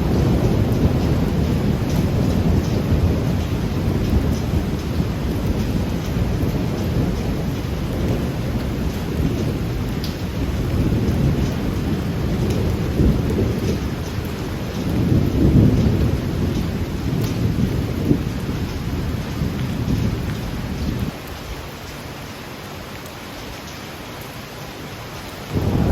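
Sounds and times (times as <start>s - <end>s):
low rumble of thunder: 0.0s - 21.8s, 25.4s - 25.9s
heavy rain: 0.0s - 25.9s.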